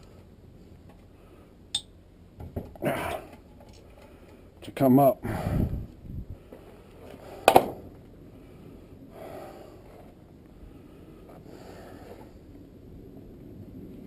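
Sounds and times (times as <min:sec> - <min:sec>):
man breathing hard: 0:05.2 - 0:07.7, 0:08.3 - 0:12.5.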